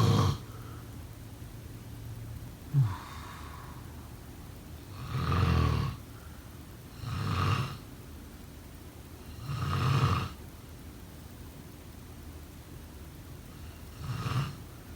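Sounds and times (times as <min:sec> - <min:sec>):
person snoring: 0:00.0 - 0:00.4, 0:02.7 - 0:03.8, 0:04.9 - 0:06.0.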